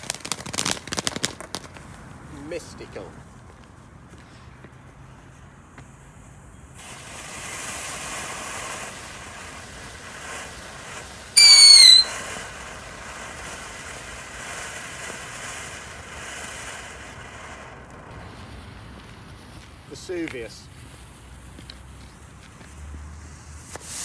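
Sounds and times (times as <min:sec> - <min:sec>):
firework hissing: 0:00.0 - 0:01.8, 0:05.9 - 0:24.0
firework shrill whistle: 0:11.3 - 0:12.6.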